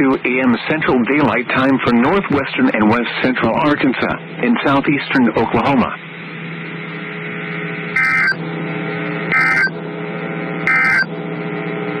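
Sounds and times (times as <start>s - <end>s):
digital warbling bursts: 8.0s - 8.4s, 9.3s - 9.7s, 10.7s - 11.1s.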